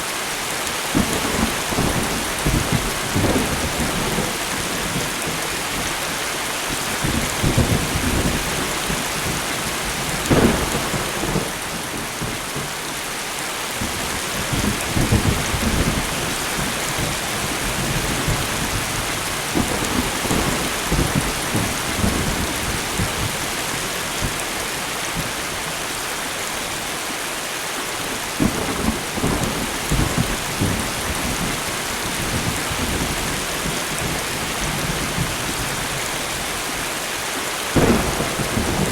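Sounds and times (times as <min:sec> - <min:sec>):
thunder rumbling: 0:00.9 - 0:06.1, 0:07.0 - 0:12.7, 0:13.8 - 0:24.4, 0:28.4 - 0:36.5, 0:37.7 - 0:38.9
light rain hissing: 0:13.9 - 0:38.9.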